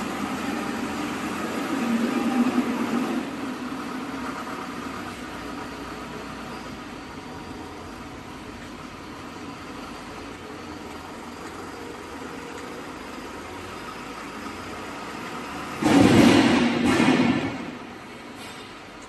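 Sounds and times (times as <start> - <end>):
machinery humming: 0.0 - 19.0
loud rushing noise: 15.8 - 18.7.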